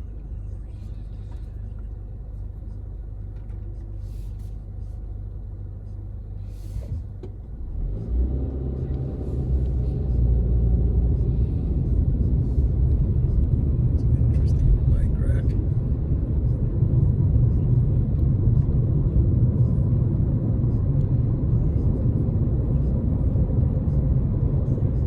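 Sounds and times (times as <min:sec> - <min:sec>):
car engine and road noise: 0:00.0 - 0:25.0.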